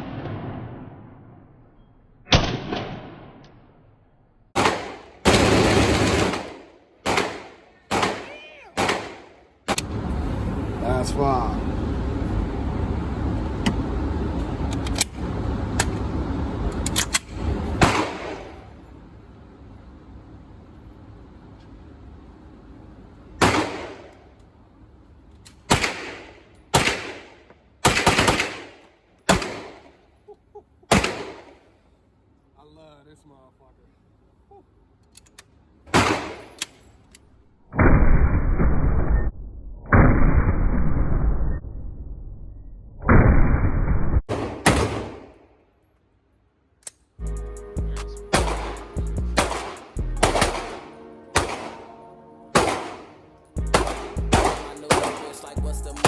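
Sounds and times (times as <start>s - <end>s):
loud gunshots with echo: 0.0s - 1.2s, 2.3s - 3.4s, 4.6s - 9.4s, 17.8s - 18.6s, 23.4s - 24.1s, 25.7s - 29.9s, 30.9s - 31.6s, 35.9s - 36.5s, 48.3s - 56.0s.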